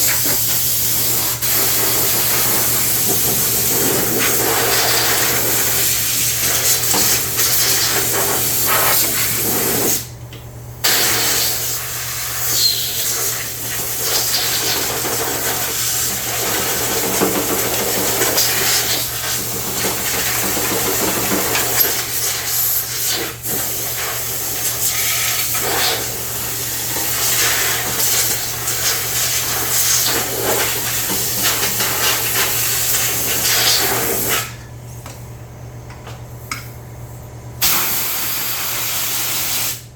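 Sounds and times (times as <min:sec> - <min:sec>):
loud steady hiss: 0:37.6 - 0:39.9.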